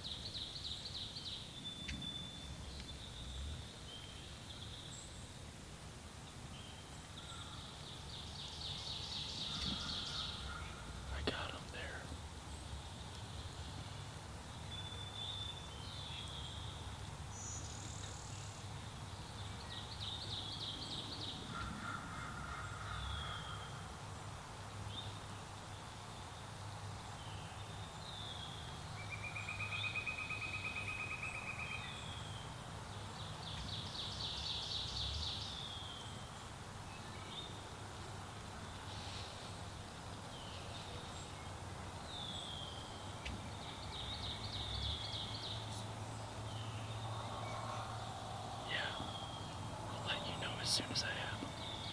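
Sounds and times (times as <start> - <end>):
songbirds chirping and trilling: 0.0 - 51.9
low background rumble: 41.3 - 51.9.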